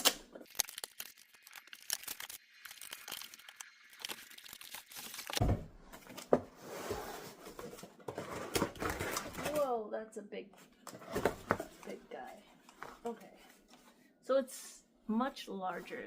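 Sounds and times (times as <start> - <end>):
packaging crinkling and rustling: 0.0 - 5.4
tape tearing: 0.0 - 5.4.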